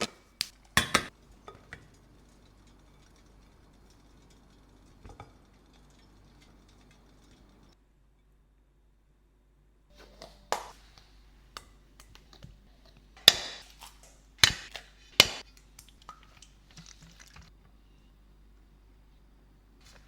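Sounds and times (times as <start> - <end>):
utensils and dishes clinking: 0.7 - 7.8.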